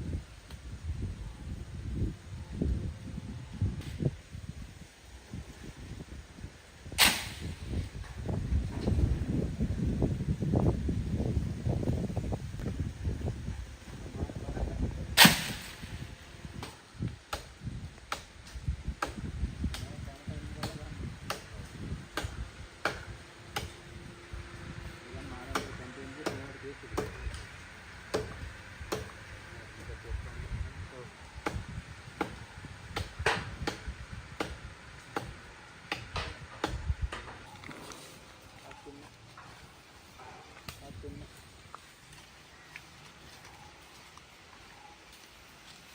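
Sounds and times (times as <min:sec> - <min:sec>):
sharp knocks on wood: 0:28.1 - 0:29.1.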